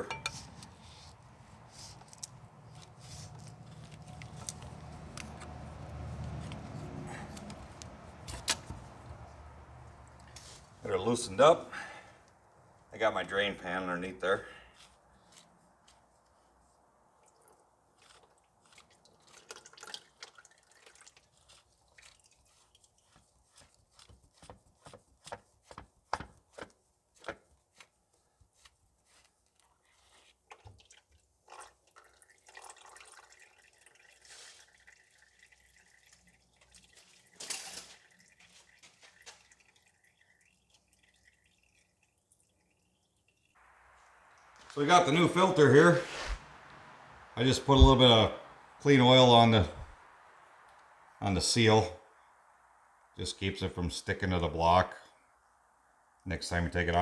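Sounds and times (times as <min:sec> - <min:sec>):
hand tools clicking and tapping: 0:00.0 - 0:00.9
oil dripping into a pan: 0:17.2 - 0:24.1, 0:30.4 - 0:44.7
low steady hum: 0:43.6 - 0:57.0.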